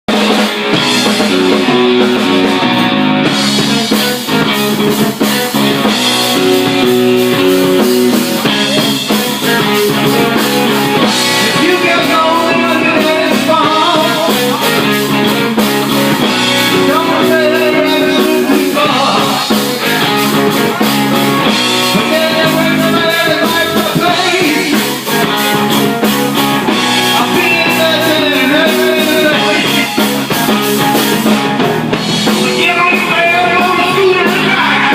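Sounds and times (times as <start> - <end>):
rock band playing: 0.0 - 34.9
electric guitar: 0.1 - 34.9
person singing: 5.1 - 25.6, 26.7 - 30.4, 32.3 - 34.9.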